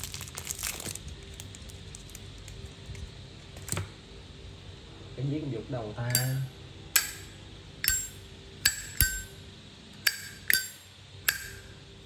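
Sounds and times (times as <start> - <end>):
lighter lid metallic clinks: 6.1 - 9.4, 10.0 - 11.6.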